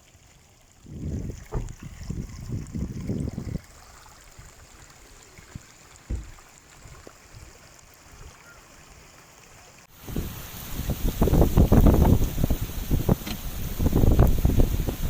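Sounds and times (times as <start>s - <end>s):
running water hiss: 0.0s - 15.0s
wind buffeting microphone: 0.8s - 3.8s, 10.0s - 15.0s
thump: 1.5s - 1.8s, 6.1s - 6.5s.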